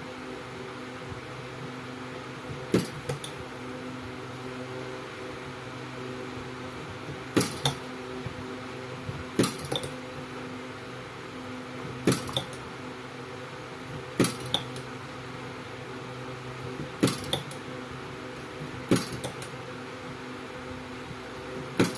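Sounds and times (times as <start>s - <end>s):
welder electrical hum: 0.0s - 21.9s
spot welder cracks: 2.7s - 3.4s, 7.3s - 7.9s, 9.4s - 10.0s, 12.0s - 12.7s, 14.2s - 14.9s, 16.9s - 17.6s, 18.9s - 19.6s.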